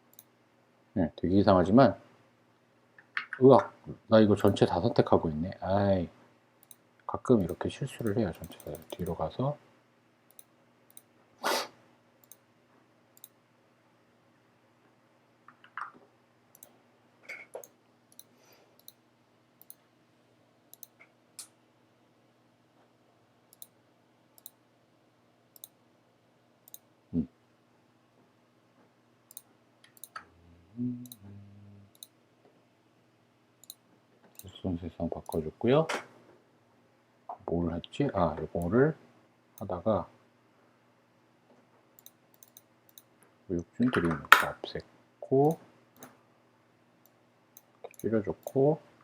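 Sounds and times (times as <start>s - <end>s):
faint electrical hum: 0.0s - 49.0s
computer mouse clicking: 7.4s - 9.2s, 12.2s - 12.4s, 15.5s - 16.7s, 17.6s - 19.0s, 19.6s - 19.8s, 20.7s - 21.5s, 23.5s - 23.8s, 24.4s - 24.6s, 25.6s - 25.8s, 29.3s - 30.2s, 31.9s - 32.1s, 33.6s - 34.5s, 42.0s - 43.1s, 47.0s - 48.6s
brief low tone: 30.5s - 31.9s.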